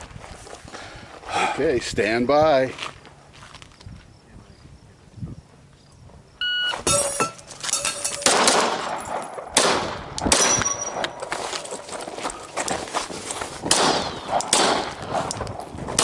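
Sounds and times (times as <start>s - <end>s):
shot timer beep: 6.4s - 7.4s
steel targets clanging: 6.7s - 9.5s, 10.3s - 11.3s
rifle shots: 8.2s - 11.1s, 13.6s - 15.3s.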